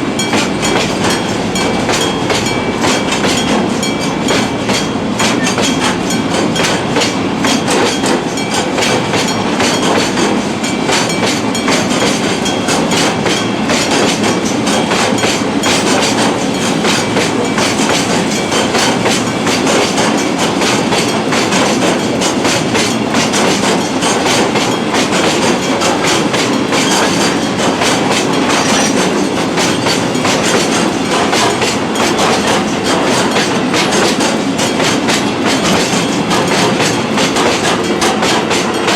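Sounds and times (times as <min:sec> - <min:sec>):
train wheels clattering over rail joints: 0:00.0 - 0:38.9.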